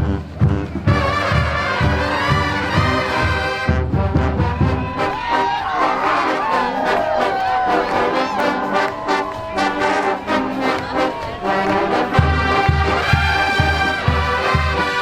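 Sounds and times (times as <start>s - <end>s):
marching band brass playing: 0.0s - 15.0s.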